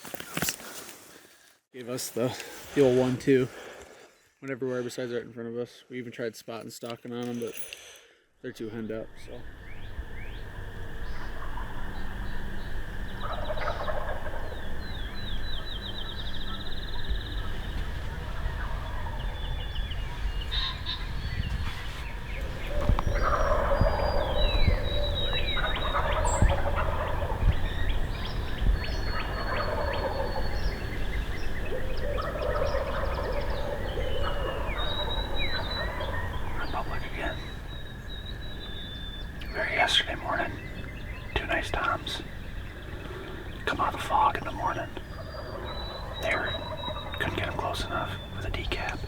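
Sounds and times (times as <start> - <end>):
small birds chirping: 7.0 - 49.0
turkeys gobbling: 13.2 - 15.7, 22.4 - 31.0, 31.7 - 37.7, 41.6 - 48.8.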